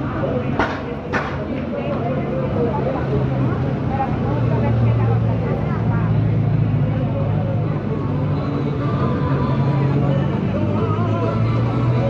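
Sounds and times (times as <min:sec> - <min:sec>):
music with singing voice: 0:08.4 - 0:12.0.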